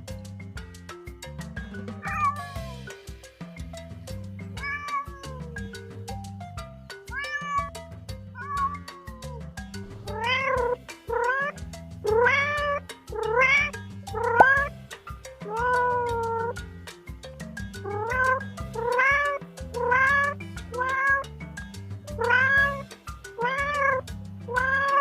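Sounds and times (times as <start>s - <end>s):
background music with beat: 0.0s - 25.0s
cat meowing: 2.0s - 2.8s, 4.6s - 5.6s, 7.1s - 7.7s, 8.4s - 9.4s, 10.1s - 14.7s, 15.4s - 16.6s, 17.8s - 21.2s, 22.1s - 25.0s.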